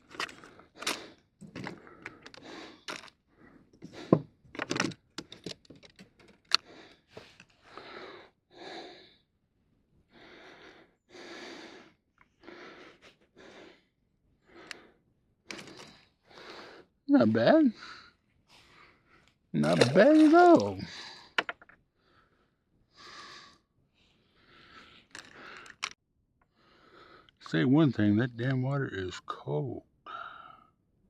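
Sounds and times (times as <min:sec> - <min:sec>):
gear clicking and knocking: 0:00.0 - 0:03.1, 0:04.0 - 0:06.6.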